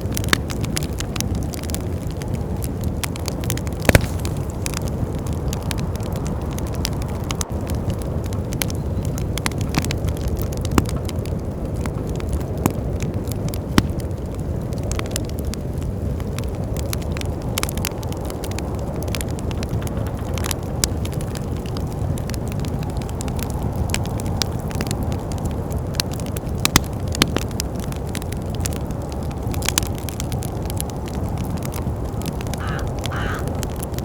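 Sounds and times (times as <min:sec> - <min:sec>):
low rush of wind: 0:00.0 - 0:34.0
wood fire crackling and popping: 0:00.0 - 0:34.0.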